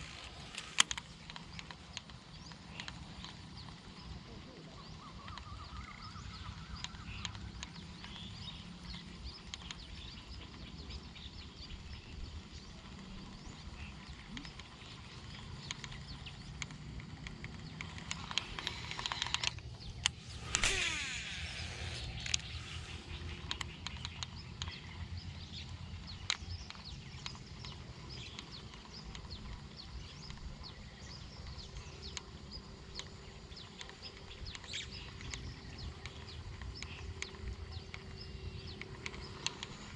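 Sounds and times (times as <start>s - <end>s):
small clicks and ticks: 0.0s - 39.9s
steady low rumble: 0.0s - 39.9s
whirr falling in pitch: 15.6s - 24.3s.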